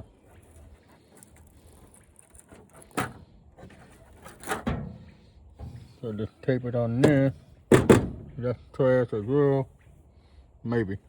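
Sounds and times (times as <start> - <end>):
low rustling of parts: 0.0 - 8.7.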